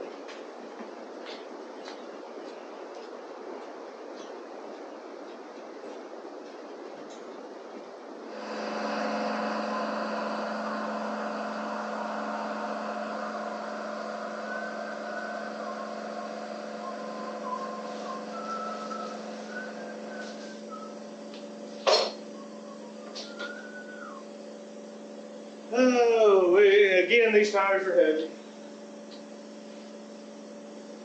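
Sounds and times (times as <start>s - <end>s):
air compressor running: 8.0s - 31.0s
sharp knock: 21.8s - 22.2s.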